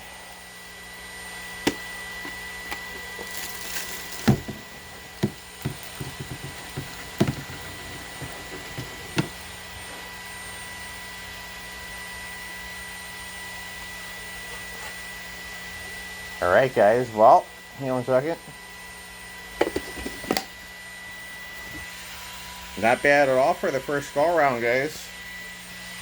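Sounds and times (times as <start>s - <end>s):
plastic clicks and knocks: 1.7s - 9.4s.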